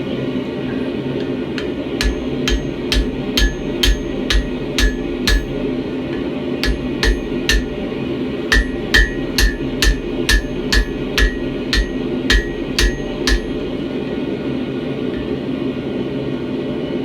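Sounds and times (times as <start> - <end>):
hammer striking metal on anvil: 1.2 - 13.9.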